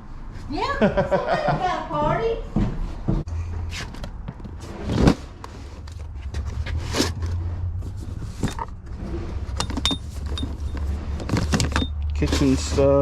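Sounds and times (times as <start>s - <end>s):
clicks and knocks of items moved: 3.6s - 13.0s.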